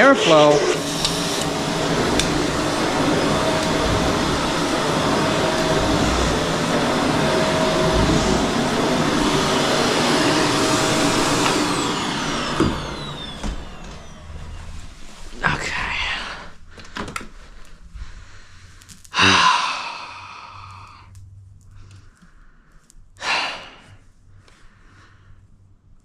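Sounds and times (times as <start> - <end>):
vacuum motor winding down: 0.0 - 15.9
vacuum cleaner running: 0.0 - 17.5, 23.2 - 23.9.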